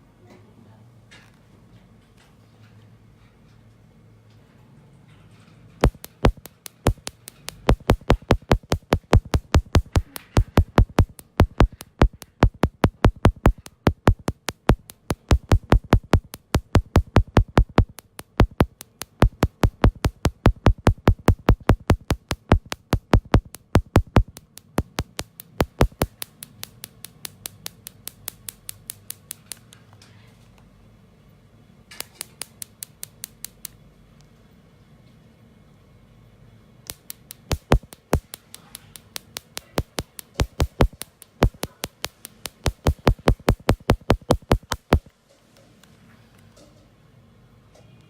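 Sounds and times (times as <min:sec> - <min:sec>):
electronic music with drum-machine beat: 0:05.8 - 0:26.1, 0:37.5 - 0:38.3, 0:39.7 - 0:41.8, 0:42.5 - 0:45.1.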